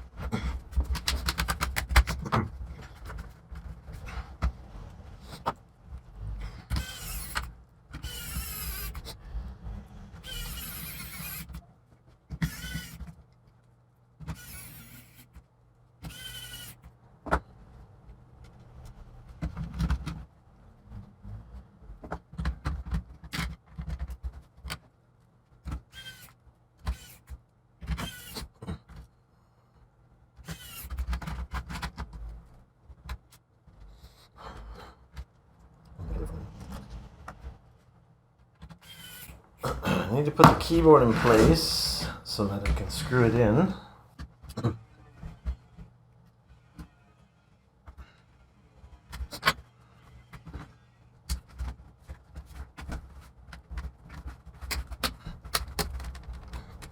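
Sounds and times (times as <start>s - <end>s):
plastic parts clicking and creaking: 0.0s - 4.6s, 5.2s - 9.2s, 22.0s - 29.1s, 30.4s - 33.9s, 51.3s - 56.9s.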